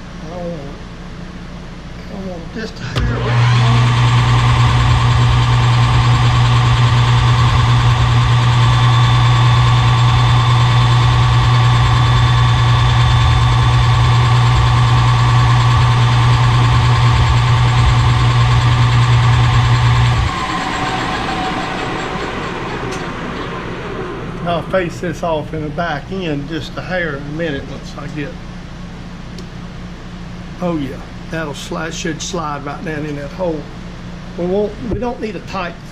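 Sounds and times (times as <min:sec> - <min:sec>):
metal lathe running: 0:03.0 - 0:25.1.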